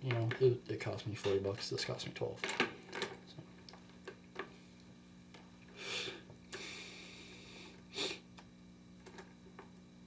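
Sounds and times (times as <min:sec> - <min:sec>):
person sniffing: 0:05.8 - 0:08.3.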